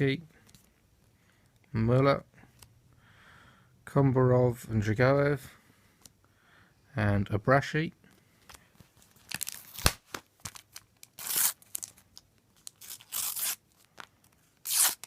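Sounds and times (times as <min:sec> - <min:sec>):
wrapper crinkling: 0:08.9 - 0:15.0
sticker packet tearing: 0:09.2 - 0:15.0.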